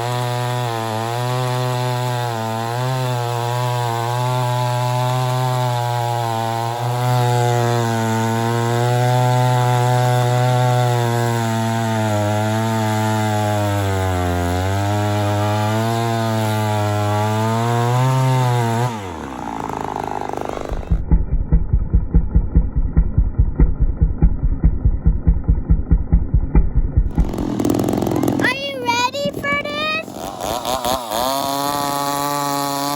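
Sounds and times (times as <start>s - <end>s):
chainsaw cutting wood: 0.0s - 21.2s, 27.0s - 32.9s
low pulsing engine: 19.1s - 32.4s.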